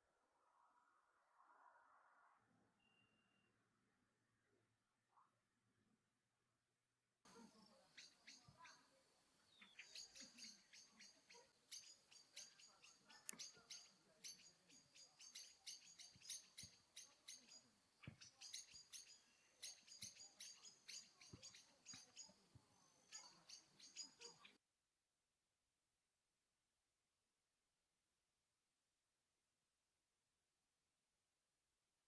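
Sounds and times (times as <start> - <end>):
small birds chirping: 7.3 - 24.6.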